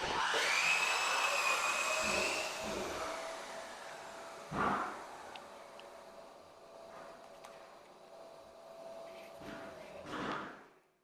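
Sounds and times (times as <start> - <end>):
electric motor whining: 0.0 - 5.5.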